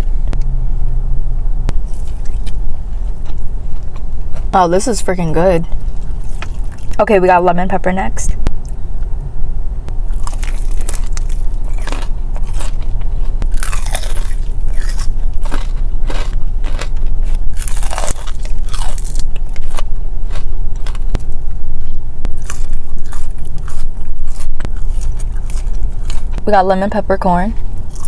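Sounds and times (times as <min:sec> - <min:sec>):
steady low rumble: 0:00.0 - 0:28.0
wet mouth sounds: 0:01.7 - 0:04.0
crunchy chewing: 0:01.7 - 0:04.6, 0:05.7 - 0:07.0, 0:10.1 - 0:26.4, 0:27.6 - 0:28.0.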